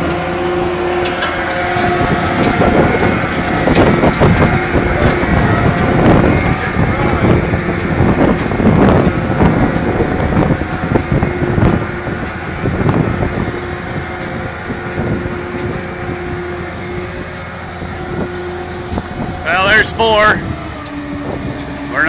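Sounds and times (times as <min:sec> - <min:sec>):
machine knocks and clatter: 0:00.0 - 0:16.8
baler engine hum: 0:00.0 - 0:22.0
wind buffeting microphone: 0:00.0 - 0:22.0.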